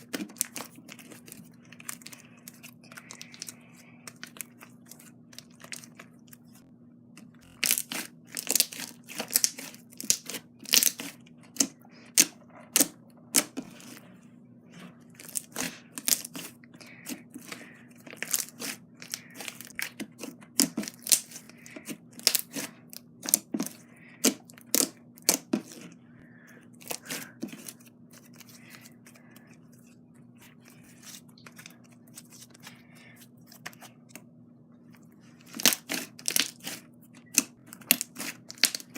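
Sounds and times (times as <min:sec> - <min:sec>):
slime being kneaded by hand: 0:07.4 - 0:14.0, 0:14.7 - 0:25.9, 0:35.3 - 0:38.9.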